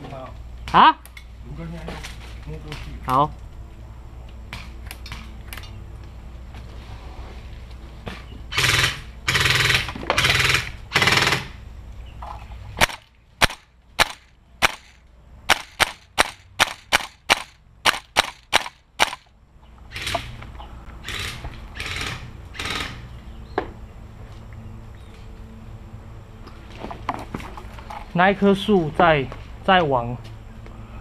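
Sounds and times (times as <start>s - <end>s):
airsoft gun shots: 12.8s - 19.2s.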